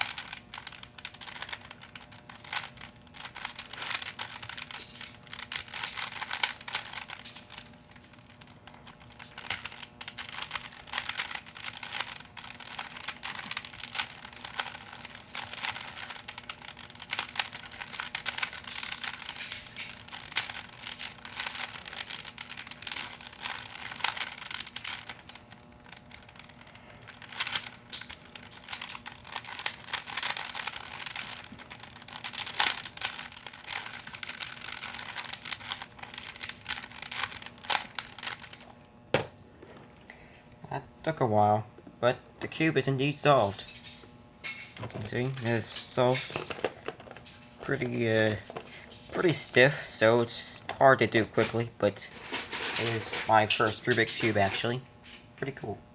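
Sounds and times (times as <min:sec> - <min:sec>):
plastic cube clicking and scraping: 0:00.0 - 0:25.4.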